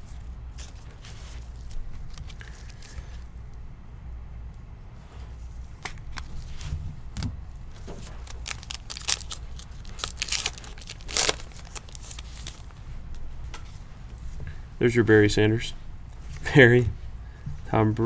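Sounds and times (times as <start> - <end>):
foil wrappers crinkling: 0.0 - 3.3, 5.9 - 13.2
steady low hum: 0.0 - 18.0
cards being handled: 0.6 - 3.3, 5.8 - 13.2.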